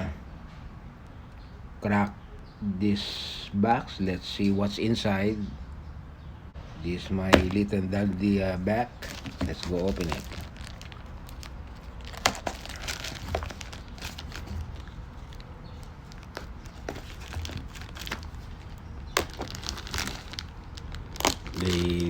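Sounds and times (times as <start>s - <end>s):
packaging crinkling and rustling: 7.2s - 7.7s, 9.0s - 22.0s.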